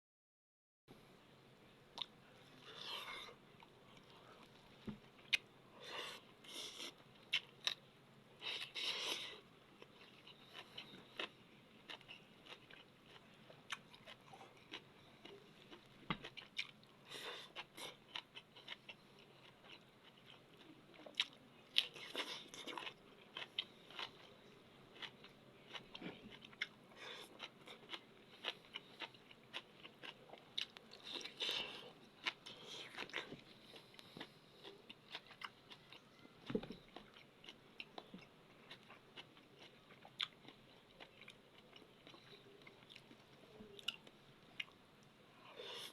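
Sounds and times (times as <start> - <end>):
chewing crunchy food: 8.4 - 44.8.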